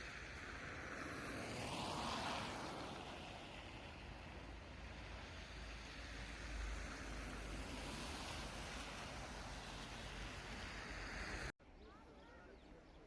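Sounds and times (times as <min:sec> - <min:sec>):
vehicle passing by: 0:00.7 - 0:03.6.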